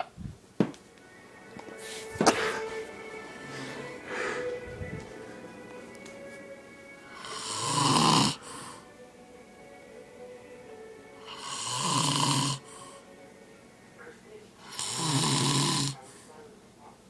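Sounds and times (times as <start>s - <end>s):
man snoring: 7.1s - 8.9s, 11.2s - 13.0s, 14.6s - 16.0s.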